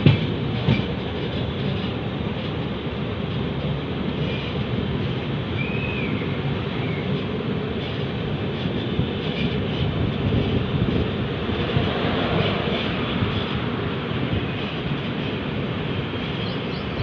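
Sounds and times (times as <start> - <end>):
passenger train rumbling: 0.0 - 17.0.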